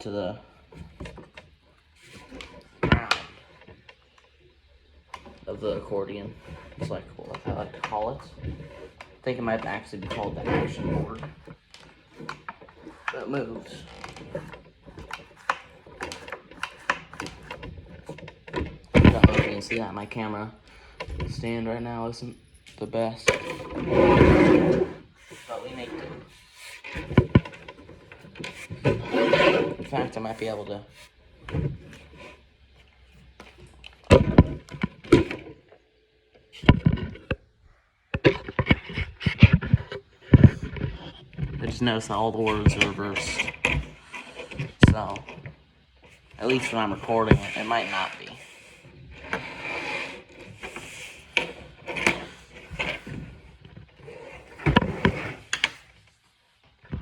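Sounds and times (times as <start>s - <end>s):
wooden objects knocking and clattering: 13.8s - 20.0s, 23.2s - 30.6s, 33.3s - 35.6s, 36.6s - 37.5s.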